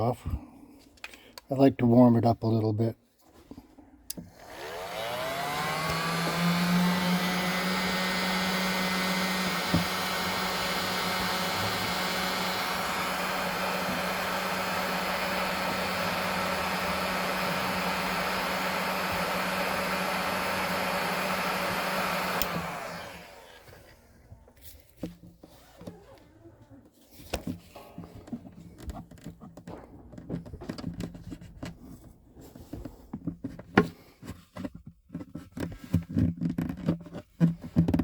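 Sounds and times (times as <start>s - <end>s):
heat gun fan blowing: 4.1s - 24.0s.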